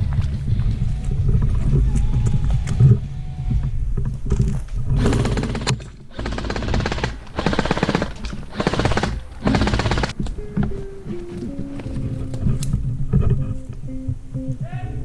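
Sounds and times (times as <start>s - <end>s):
low camera rumble: 0.0s - 15.0s
airsoft gun firing bursts: 5.0s - 10.2s.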